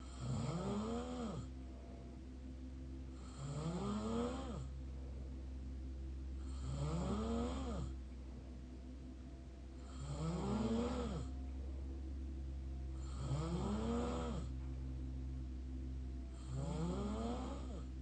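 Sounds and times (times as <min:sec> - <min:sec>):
person snoring: 0:00.0 - 0:01.5, 0:03.2 - 0:04.7, 0:06.4 - 0:07.9, 0:09.8 - 0:11.4, 0:13.0 - 0:14.5, 0:16.4 - 0:17.9
steady low hum: 0:00.0 - 0:18.0.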